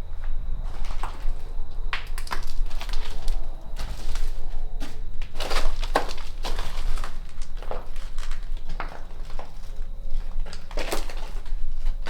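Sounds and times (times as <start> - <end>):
footsteps crunching on debris: 0.0 - 12.0.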